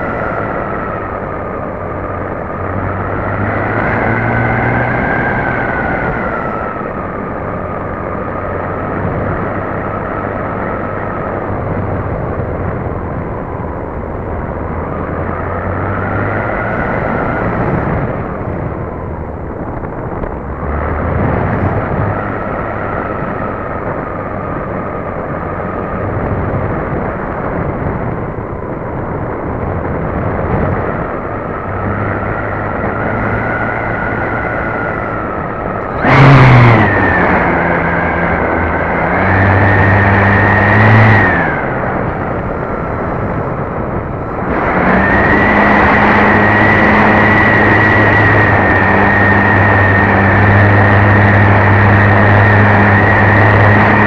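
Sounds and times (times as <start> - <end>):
wind rush on microphone: 0.0 - 54.0
model plane motor and propeller whine: 36.8 - 54.0.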